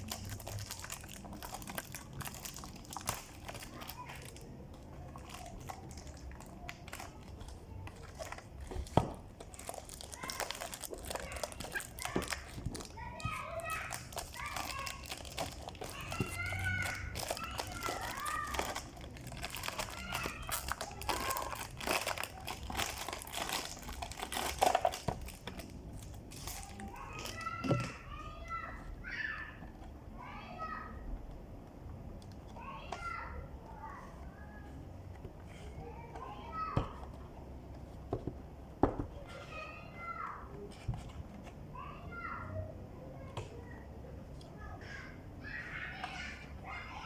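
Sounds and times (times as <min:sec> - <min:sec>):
cardboard and paper crinkling: 0:00.0 - 0:27.9.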